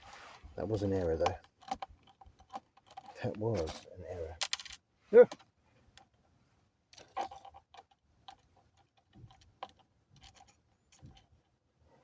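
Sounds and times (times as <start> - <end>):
small plastic parts and screws clicking: 1.2 - 3.8, 7.0 - 11.6.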